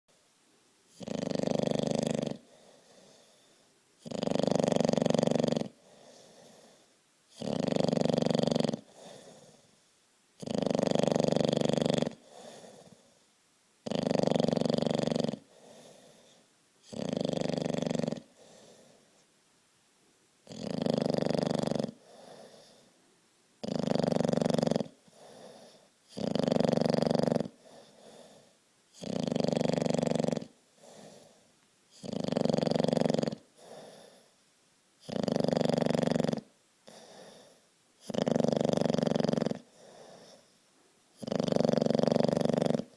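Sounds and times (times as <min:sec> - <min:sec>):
dog snoring: 0:00.9 - 0:09.8, 0:10.4 - 0:13.2, 0:13.8 - 0:19.2, 0:20.4 - 0:22.9, 0:23.6 - 0:34.3, 0:35.0 - 0:42.9
faint short breath: 0:05.8 - 0:07.0.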